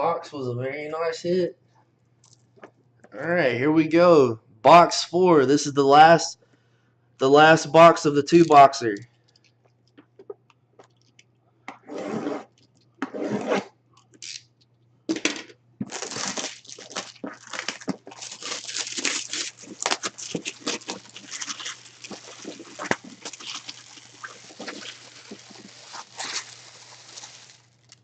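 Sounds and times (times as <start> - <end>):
packaging crinkling and rustling: 15.8 - 28.0
packaging tearing: 15.8 - 28.0.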